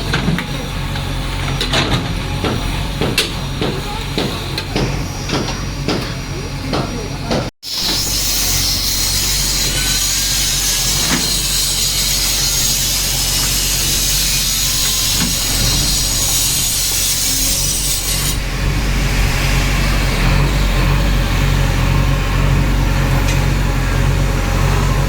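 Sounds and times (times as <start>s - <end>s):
diesel engine running: 0.0s - 25.0s
harsh hissing scraping noise: 7.7s - 22.4s.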